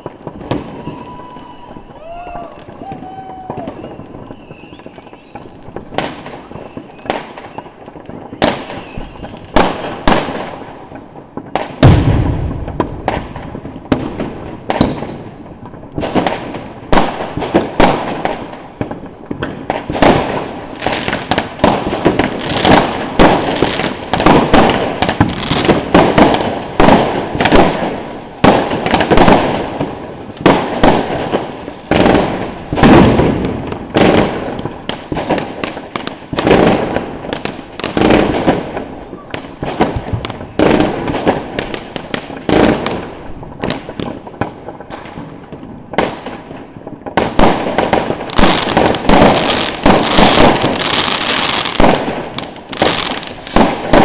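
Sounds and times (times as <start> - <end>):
firework sharp reports: 0.0 - 54.0
rapid firework shots and crackling: 0.0 - 54.0
deep firework boom: 11.6 - 18.2.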